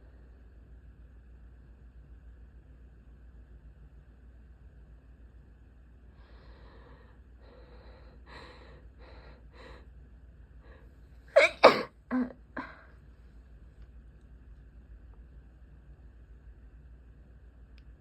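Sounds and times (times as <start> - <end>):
person sneezing: 11.4 - 12.9.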